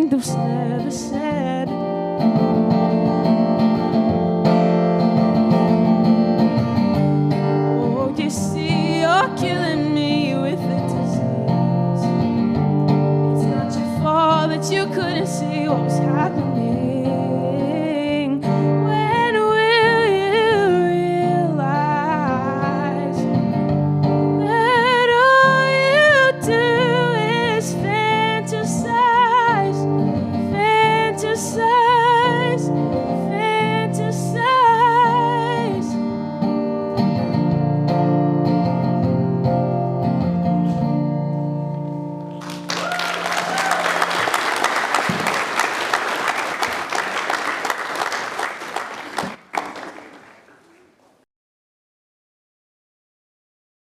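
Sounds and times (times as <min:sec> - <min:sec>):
person singing: 0:00.0 - 0:01.8, 0:07.6 - 0:12.1, 0:13.3 - 0:23.3
audience applause: 0:42.4 - 0:51.2.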